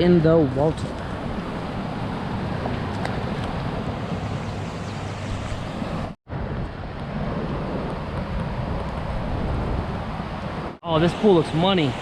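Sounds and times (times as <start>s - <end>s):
creek water rushing: 10.1s - 12.0s.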